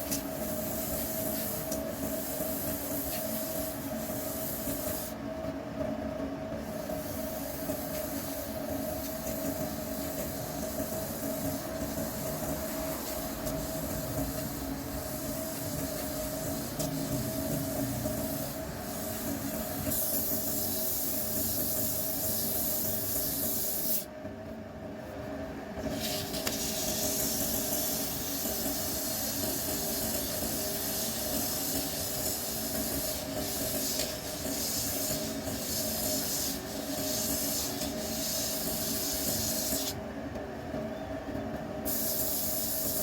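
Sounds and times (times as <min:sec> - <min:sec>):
tool hissing on spinning wood: 0:00.0 - 0:05.2, 0:06.7 - 0:24.0, 0:25.9 - 0:40.0, 0:41.9 - 0:43.0.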